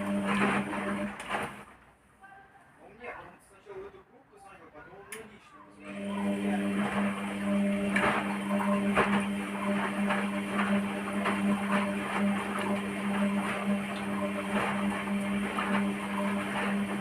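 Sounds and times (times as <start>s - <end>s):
washing machine motor hum: 0.0s - 1.8s, 5.8s - 17.0s
washing machine drum knocking: 6.5s - 17.0s.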